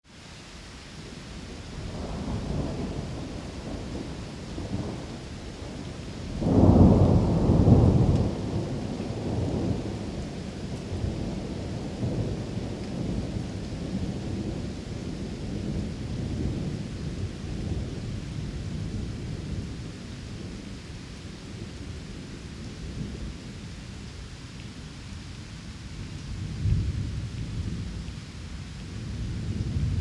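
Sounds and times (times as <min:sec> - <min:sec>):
soft rain: 0:00.0 - 0:30.0
thunder rumbling: 0:01.5 - 0:20.6, 0:28.9 - 0:30.0.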